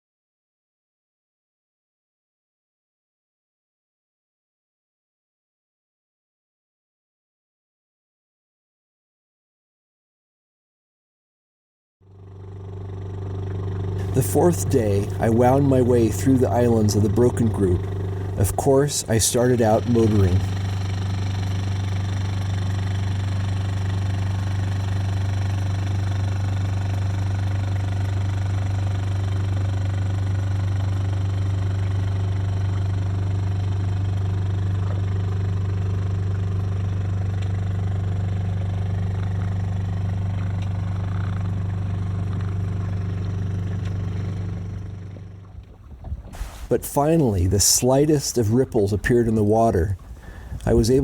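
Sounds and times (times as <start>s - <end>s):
outboard motor drone: 12.0s - 51.0s.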